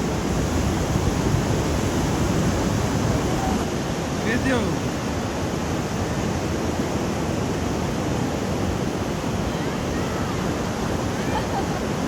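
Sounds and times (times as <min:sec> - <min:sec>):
wind rumbling on microphone: 0:00.0 - 0:04.2
ocean surf washing onto beach: 0:00.0 - 0:12.0.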